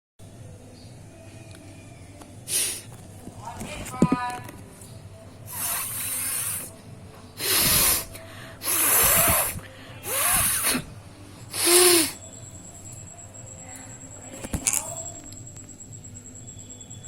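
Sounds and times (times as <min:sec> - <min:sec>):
woman blowing her nose: 0:02.5 - 0:02.9, 0:05.5 - 0:06.8, 0:07.4 - 0:10.9, 0:11.5 - 0:12.2.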